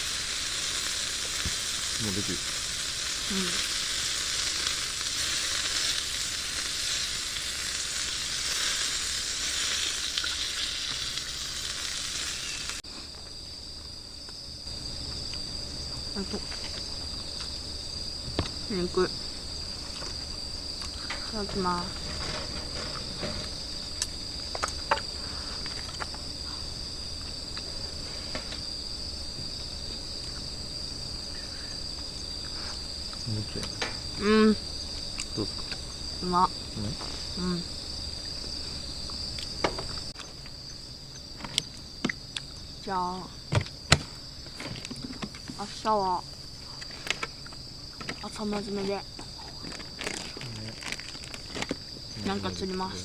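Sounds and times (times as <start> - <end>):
meat sizzling on a griddle: 0.0 - 12.8
crickets chirping: 0.0 - 53.0.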